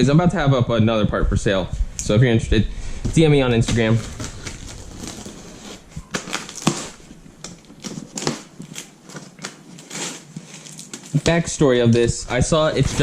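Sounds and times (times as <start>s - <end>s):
packaging being handled: 3.0s - 13.0s.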